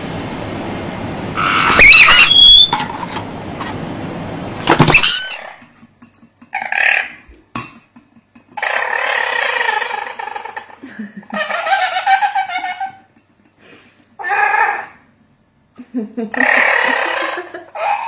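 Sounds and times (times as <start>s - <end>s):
parrot squawking and whistling: 1.4s - 2.8s, 4.9s - 5.6s, 8.6s - 10.6s, 14.2s - 15.0s.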